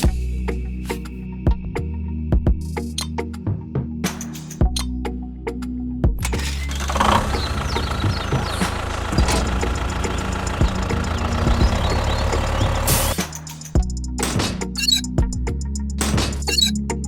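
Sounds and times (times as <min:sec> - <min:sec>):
engine knocks: 0:06.2 - 0:13.2
engine running with fast pulse: 0:06.2 - 0:14.5.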